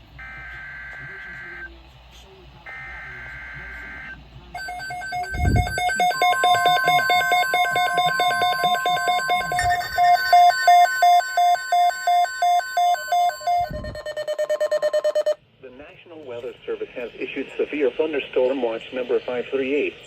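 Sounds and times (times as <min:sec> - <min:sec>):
rapid high electronic beeping: 0:02.7 - 0:15.4
steady single alert tone: 0:04.6 - 0:15.4.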